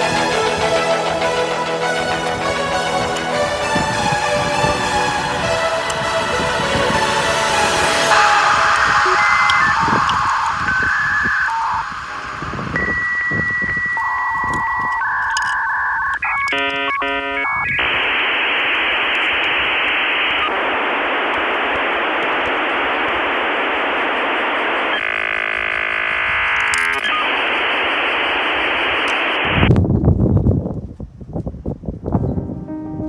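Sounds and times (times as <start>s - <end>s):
dial-up modem tones: 0.0s - 29.7s
modem hiss: 0.0s - 29.8s
warbling tones: 1.2s - 18.3s
loud low-pitched sound: 32.2s - 33.0s.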